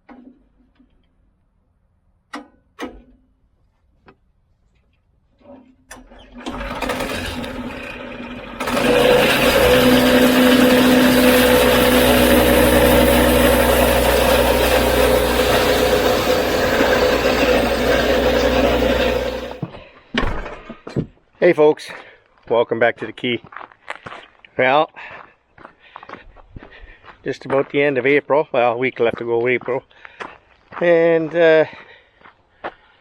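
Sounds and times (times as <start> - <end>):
engine starting and running: 5.9 - 19.8.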